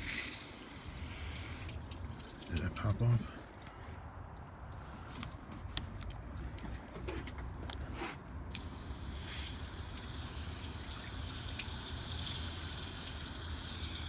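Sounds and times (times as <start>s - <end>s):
water rushing through hose: 0.0s - 2.9s, 8.7s - 14.0s.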